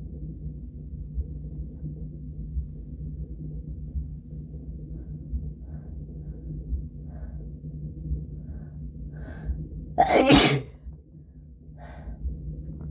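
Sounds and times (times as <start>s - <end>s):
person sneezing: 10.0s - 10.7s.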